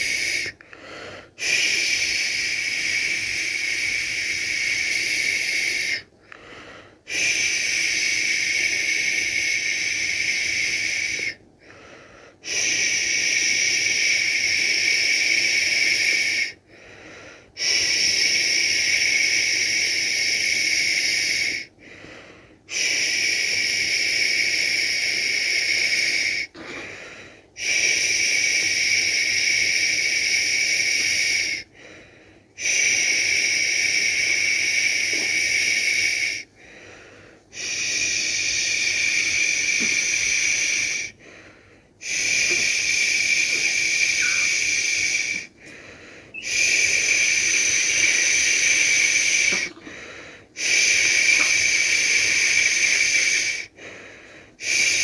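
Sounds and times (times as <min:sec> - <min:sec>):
person shushing a baby: 0:42.0 - 0:45.5, 0:46.4 - 0:49.8.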